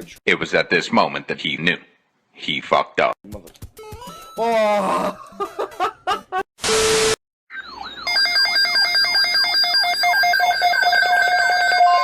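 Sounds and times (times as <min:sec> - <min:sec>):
electronic alarm tone with chirps: 0:06.8 - 0:12.0.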